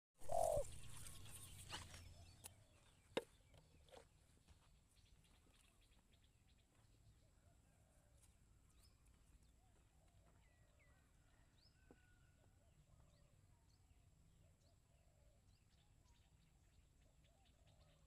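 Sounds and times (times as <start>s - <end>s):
faint bird chirps: 0.2s - 7.5s, 8.7s - 18.0s.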